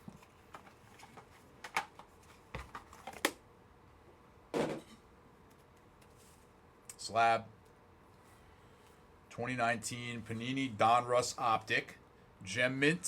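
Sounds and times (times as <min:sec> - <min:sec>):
cards and plastic cases clicking: 0:00.2 - 0:03.4.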